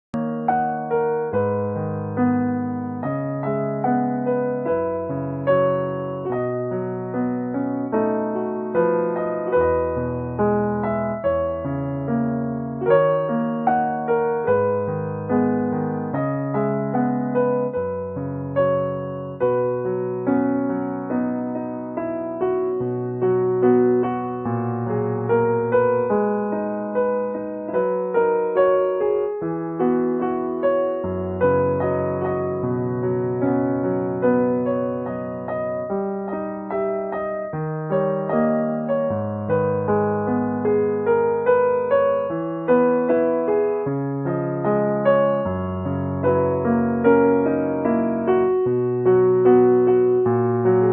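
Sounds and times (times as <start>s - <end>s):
gentle piano melody: 0.1s - 50.9s.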